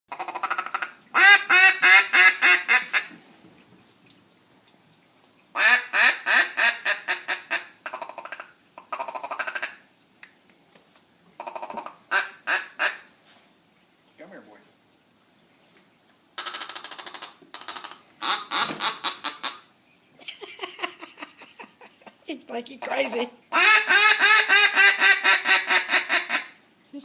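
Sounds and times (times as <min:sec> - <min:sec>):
duck call quacks: 0:00.1 - 0:03.1, 0:05.6 - 0:09.8, 0:11.4 - 0:13.1, 0:16.4 - 0:19.6, 0:23.5 - 0:26.6.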